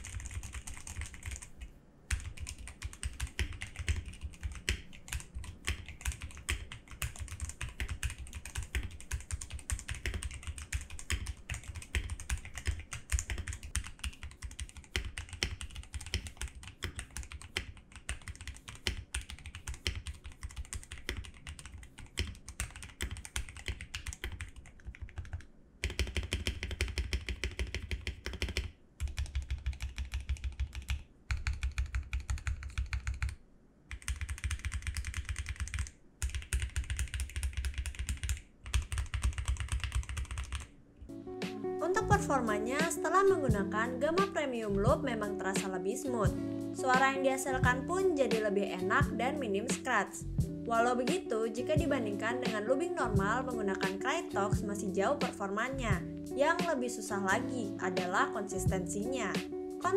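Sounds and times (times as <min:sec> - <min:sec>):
mechanical keyboard typing: 0:00.0 - 0:40.7.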